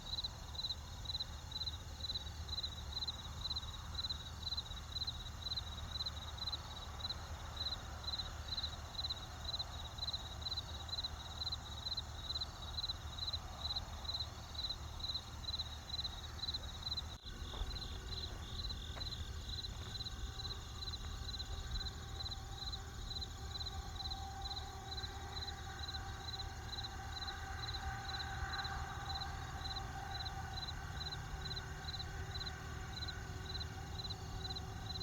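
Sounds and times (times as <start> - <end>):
crickets chirping: 0.0 - 35.0
campfire rumble: 16.1 - 24.0
fire crackles: 17.1 - 23.5.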